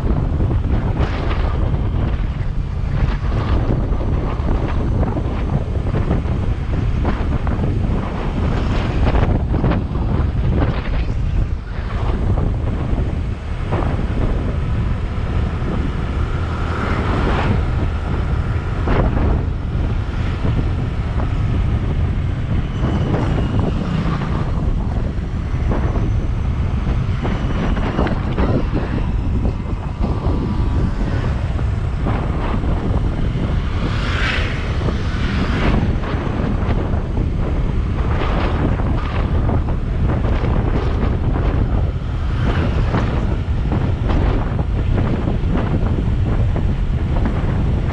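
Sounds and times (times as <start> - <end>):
road noise: 0.0 - 47.9
wind buffeting microphone: 0.0 - 47.9.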